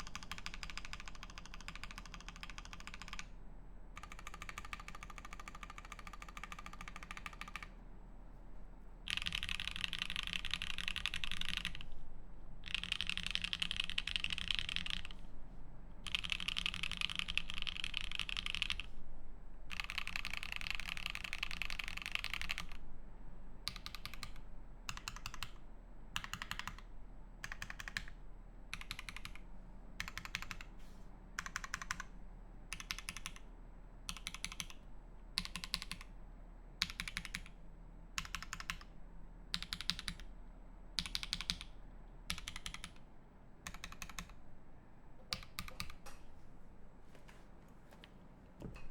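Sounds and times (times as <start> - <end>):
mechanical keyboard typing: 0.0 - 3.3, 4.0 - 7.7, 9.1 - 11.9, 12.6 - 15.2, 16.0 - 18.9, 19.7 - 22.8, 23.7 - 25.6, 26.2 - 29.4, 30.0 - 30.7, 31.4 - 32.1, 32.7 - 33.4, 34.1 - 34.8, 35.4 - 36.1, 36.8 - 37.6, 38.2 - 38.9, 39.6 - 40.3, 41.0 - 41.7, 42.3 - 43.0, 43.6 - 44.4, 45.3 - 46.2.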